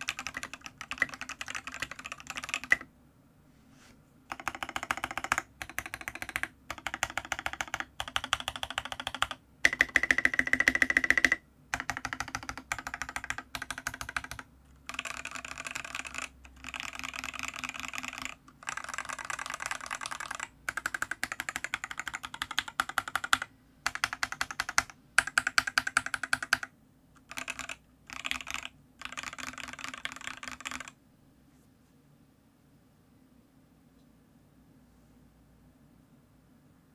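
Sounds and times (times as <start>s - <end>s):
mechanical keyboard typing: 0.0s - 2.9s, 4.3s - 31.0s.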